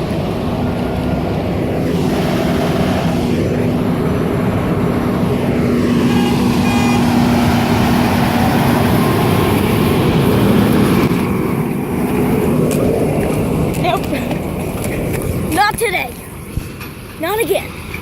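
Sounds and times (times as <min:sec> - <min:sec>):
droning tone: 0:00.0 - 0:13.4
road traffic passing: 0:00.0 - 0:18.0.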